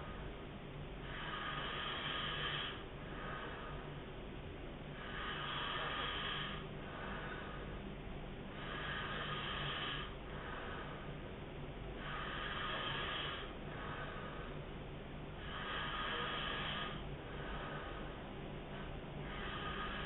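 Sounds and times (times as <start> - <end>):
quiet breathing: 0.0 - 20.0
man snoring: 1.0 - 3.8, 5.0 - 7.6, 8.6 - 11.0, 12.0 - 14.6, 15.4 - 20.0.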